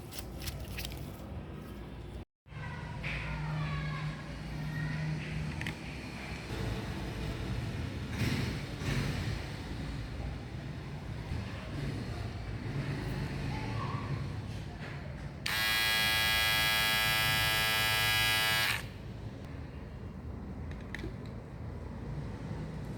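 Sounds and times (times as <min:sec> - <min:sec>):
trimmer switch click: 0:15.5 - 0:18.8
cordless trimmer buzzing: 0:15.5 - 0:18.9.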